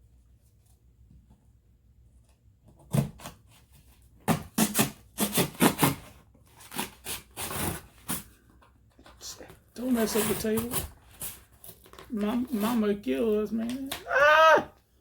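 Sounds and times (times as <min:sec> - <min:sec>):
knife cutting cardboard: 0:02.6 - 0:08.3, 0:09.9 - 0:12.0.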